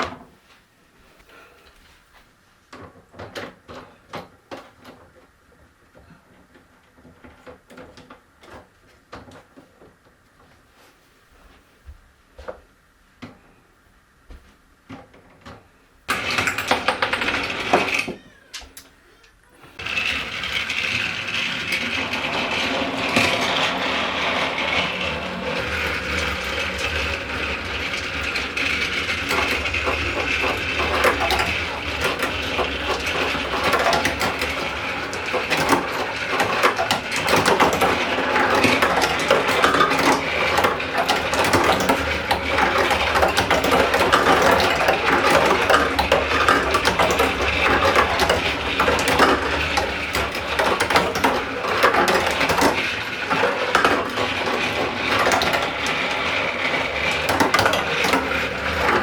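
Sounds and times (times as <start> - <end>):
marbles rattling along marble run: 16.1 - 18.2, 19.8 - 59.0.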